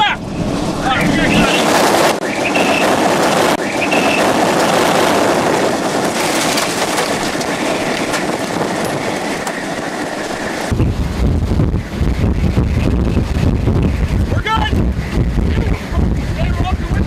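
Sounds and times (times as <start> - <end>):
deep rumble: 0.0 - 17.0
tornado wind and rain rushing: 0.0 - 17.0.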